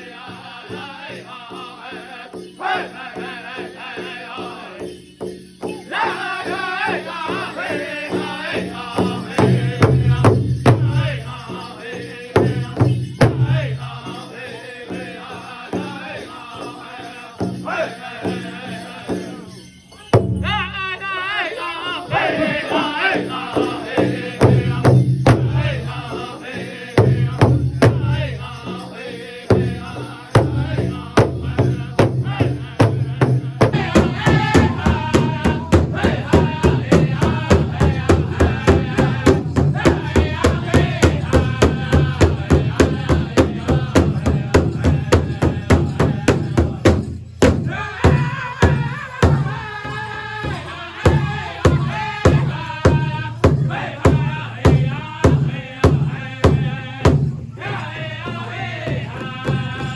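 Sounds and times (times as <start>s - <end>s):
singers chanting in high voices: 0.0s - 4.9s, 5.7s - 10.4s, 20.5s - 46.8s, 47.7s - 59.9s
big drum beating: 29.5s - 49.6s.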